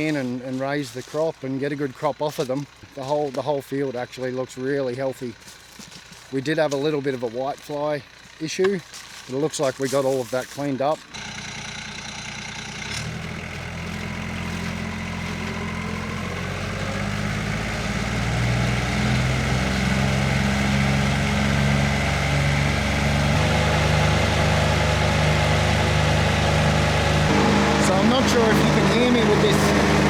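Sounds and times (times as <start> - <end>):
frost fan droning: 12.8 - 30.0.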